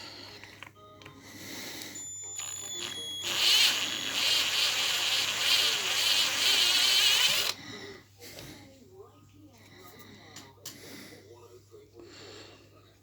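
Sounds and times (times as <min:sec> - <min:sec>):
electric drill buzzing: 0:02.0 - 0:07.6.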